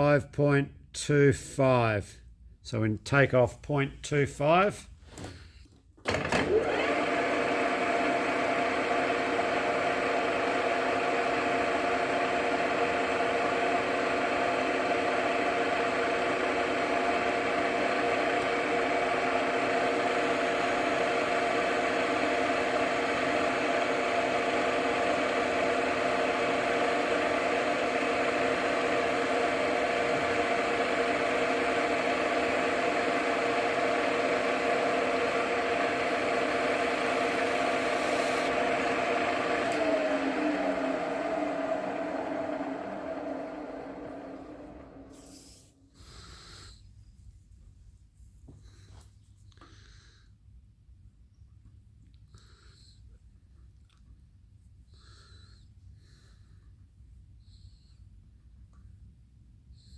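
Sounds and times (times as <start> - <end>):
lathe running: 6.1 - 45.7.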